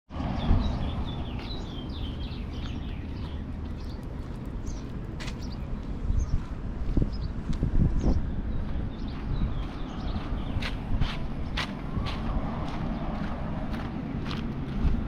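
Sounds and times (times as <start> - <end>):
steady low rumble: 0.1 - 15.0
small birds chirping: 0.4 - 11.2.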